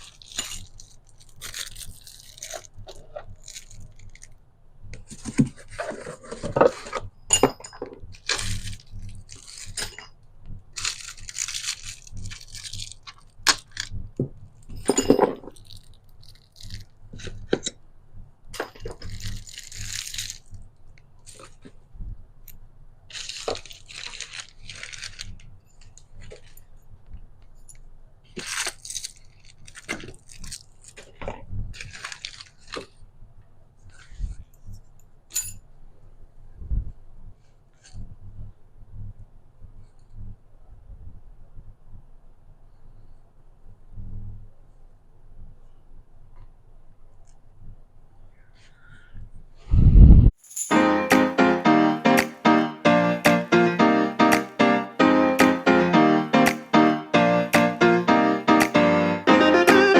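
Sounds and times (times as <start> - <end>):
crunching and scraping noises: 0.0 - 17.8, 18.6 - 22.0, 23.1 - 33.1.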